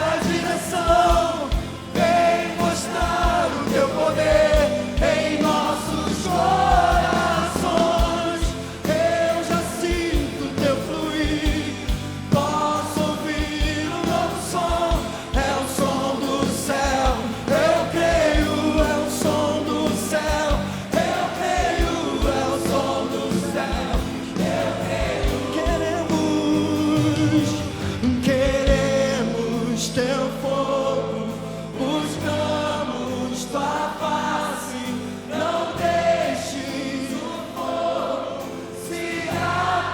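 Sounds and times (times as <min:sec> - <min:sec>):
band with bass and drums: 0:00.0 - 0:30.2
voices singing: 0:00.0 - 0:39.9.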